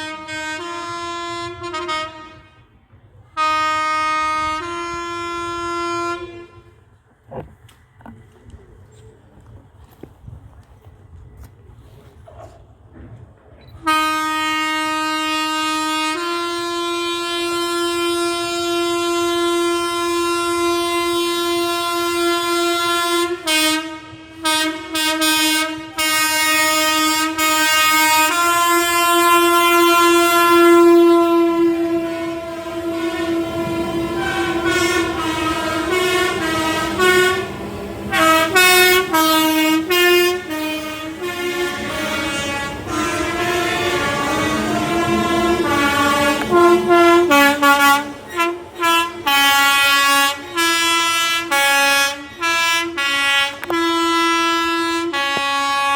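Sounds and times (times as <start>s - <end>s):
train horn blasts: 0.0s - 6.9s, 13.8s - 55.9s
train passing: 0.0s - 55.9s.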